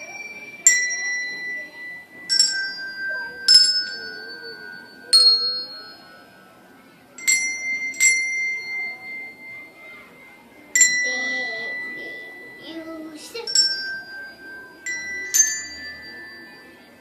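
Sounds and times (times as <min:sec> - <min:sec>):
handbells ringing a slow tune: 0:00.0 - 0:17.0.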